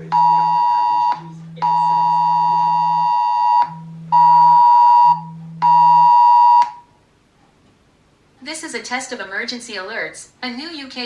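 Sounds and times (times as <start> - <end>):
phone vibration buzzing: 0.0 - 6.9
emergency alert tone blasts: 0.0 - 7.0.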